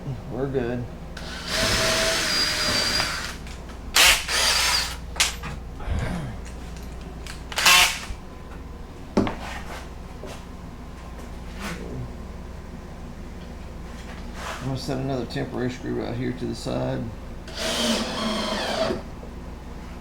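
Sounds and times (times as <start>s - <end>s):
power drill driving into wood: 1.2s - 3.4s, 4.0s - 5.0s, 7.6s - 8.1s, 17.5s - 19.0s.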